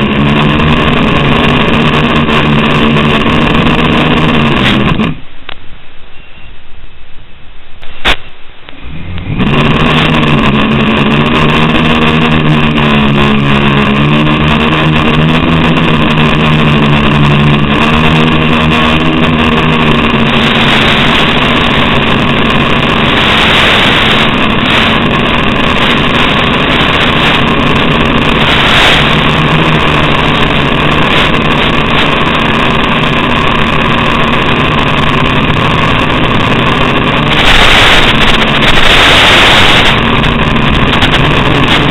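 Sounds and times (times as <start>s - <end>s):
drone motors buzzing whine: 0.0s - 5.4s, 8.0s - 41.9s
constant hiss: 17.1s - 41.9s.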